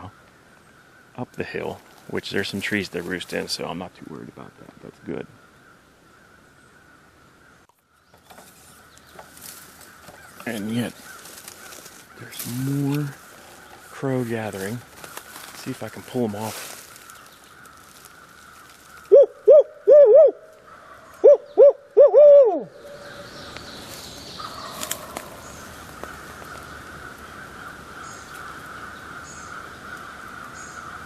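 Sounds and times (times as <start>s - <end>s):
owl hooting call: 16.6s - 31.0s.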